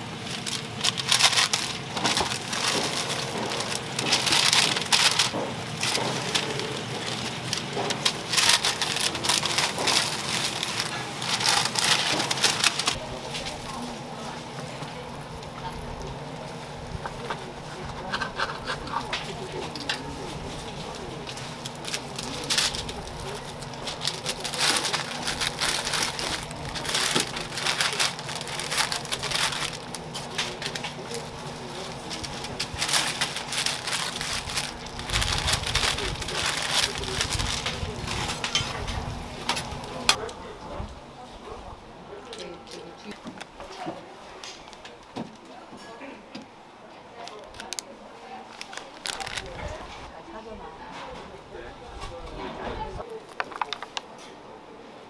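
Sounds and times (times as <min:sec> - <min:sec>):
griddle hissing: 0:00.0 - 0:40.2
scraping and crunching: 0:00.0 - 0:40.2, 0:48.4 - 0:50.1, 0:53.0 - 0:54.0.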